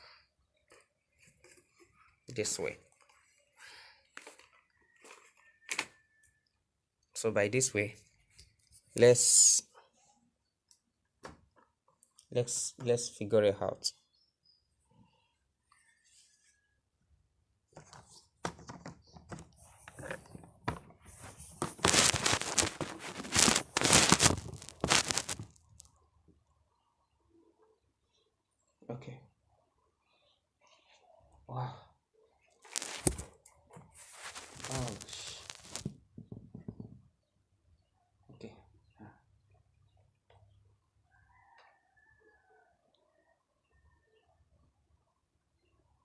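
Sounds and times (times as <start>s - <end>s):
crinkling rustling: 0.7s - 5.9s, 17.8s - 25.9s, 32.6s - 36.0s.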